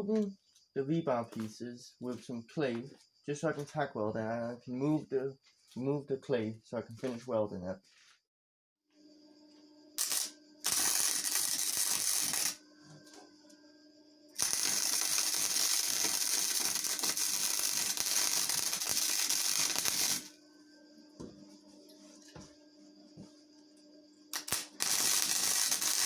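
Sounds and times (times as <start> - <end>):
electric arc welding crackling: 10.0 - 12.6, 14.4 - 20.3, 24.3 - 26.0.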